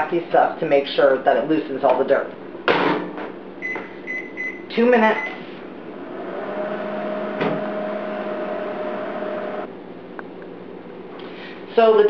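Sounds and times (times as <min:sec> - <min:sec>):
microwave oven hum: 0:03.4 - 0:11.2
steady whine: 0:05.7 - 0:10.5.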